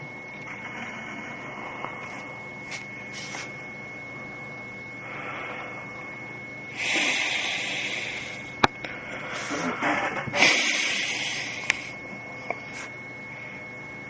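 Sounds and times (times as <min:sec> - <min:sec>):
faint hiss with high whine: 0:04.8 - 0:13.6.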